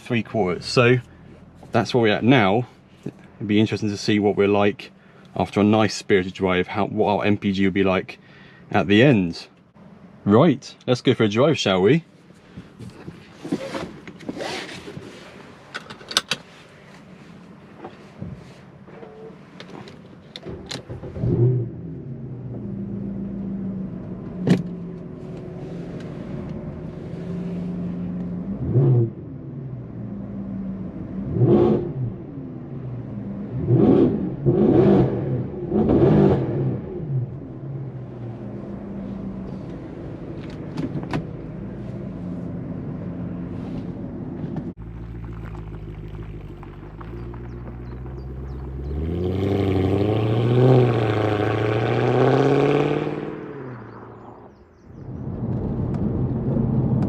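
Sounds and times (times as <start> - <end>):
car engine revving: 25.6 - 43.7, 44.3 - 57.0.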